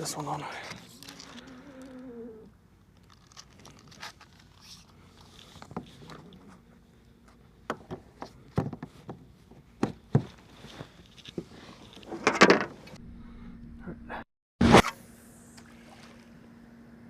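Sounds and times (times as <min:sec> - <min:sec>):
scraping rustle: 0:10.2 - 0:13.0
faint steady hum: 0:14.9 - 0:17.0.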